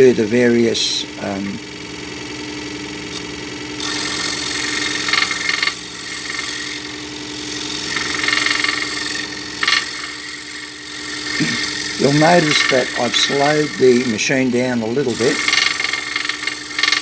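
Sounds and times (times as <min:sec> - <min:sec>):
scroll saw motor humming: 0:00.0 - 0:17.0
gritty sanding hiss: 0:03.8 - 0:17.0.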